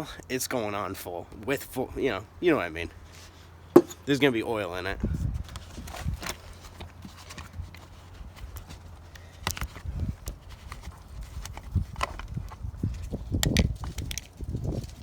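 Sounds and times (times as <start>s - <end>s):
tools knocking and clicking: 3.8s - 4.0s.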